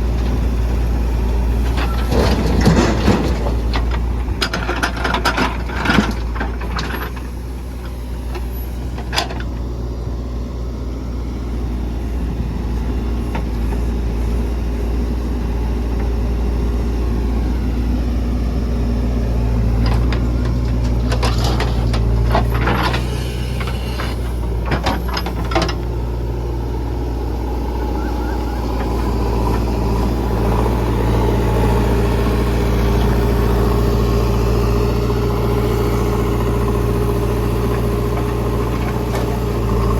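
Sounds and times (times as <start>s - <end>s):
heavy diesel engines running: 0.0s - 39.9s.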